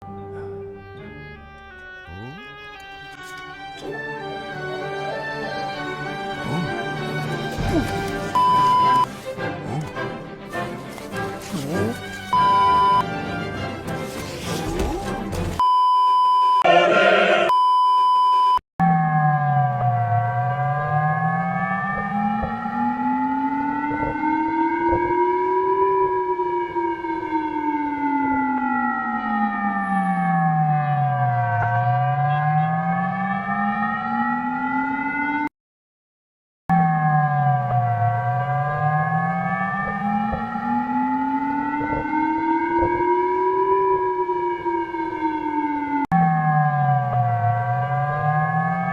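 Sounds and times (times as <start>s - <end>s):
siren wailing: 4.2s - 9.1s, 11.5s - 13.0s, 16.6s - 17.6s, 18.8s - 35.5s, 36.7s - 48.9s.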